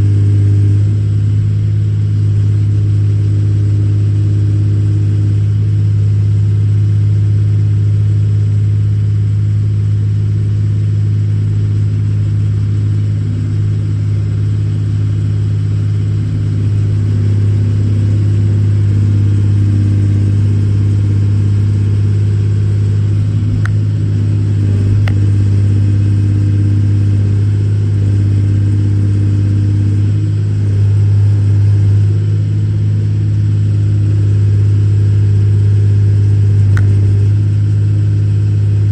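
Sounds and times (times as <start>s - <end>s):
excavator diesel engine droning: 9.2s - 38.9s.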